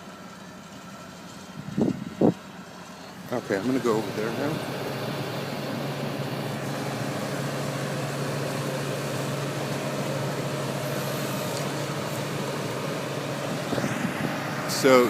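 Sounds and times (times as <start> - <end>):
crane engine humming: 0.0 - 15.0.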